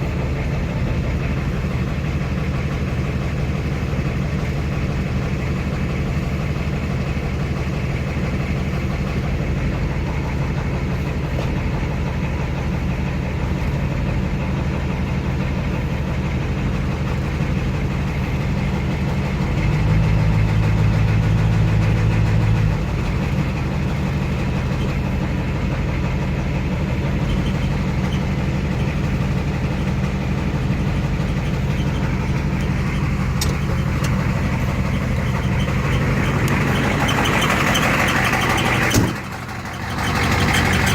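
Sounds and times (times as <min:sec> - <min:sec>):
diesel engine idling: 0:00.0 - 0:40.9
transmission squeal: 0:27.0 - 0:40.9.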